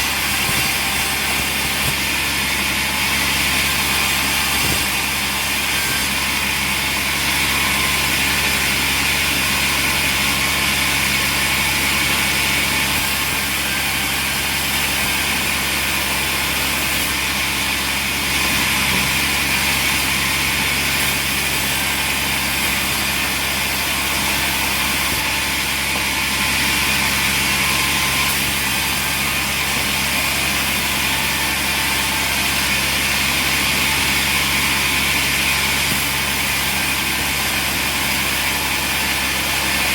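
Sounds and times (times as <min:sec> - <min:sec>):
sawmill machinery humming: 0:00.0 - 0:39.9.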